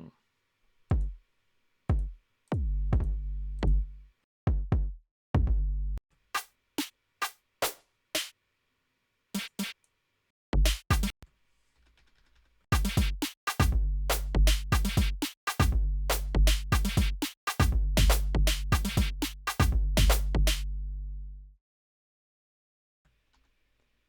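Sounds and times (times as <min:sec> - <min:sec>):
deep kick drums: 0:00.9 - 0:01.2, 0:01.9 - 0:03.9, 0:04.5 - 0:05.8, 0:10.6 - 0:11.1, 0:12.8 - 0:20.6
snare and hi-hat hits: 0:06.4 - 0:08.3, 0:09.4 - 0:09.8, 0:10.7 - 0:11.1, 0:12.7 - 0:20.6.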